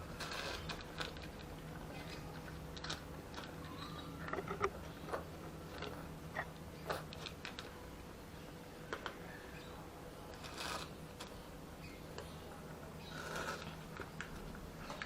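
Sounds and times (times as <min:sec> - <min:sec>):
cat crunching dry food: 0:00.0 - 0:03.6, 0:05.7 - 0:07.8, 0:10.3 - 0:11.4, 0:13.1 - 0:15.0.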